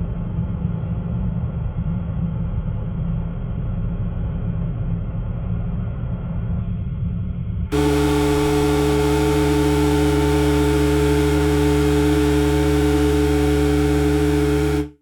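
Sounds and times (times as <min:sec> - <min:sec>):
drone propellers buzzing: 0:07.7 - 0:14.9.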